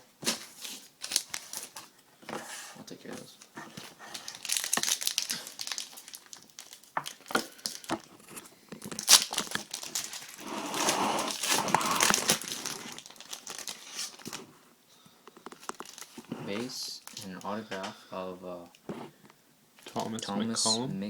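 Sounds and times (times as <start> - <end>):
wrapper crinkling and tearing: 0.2 - 1.9, 4.1 - 7.9, 8.8 - 14.5, 15.5 - 16.3, 17.0 - 17.4
cards rustling: 3.0 - 14.5, 15.3 - 17.6.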